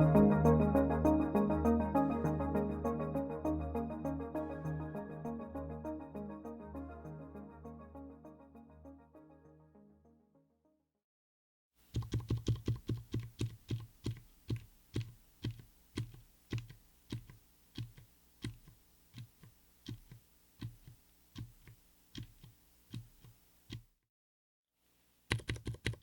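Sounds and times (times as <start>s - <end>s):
mechanical keyboard typing: 11.9s - 23.9s, 25.3s - 26.0s.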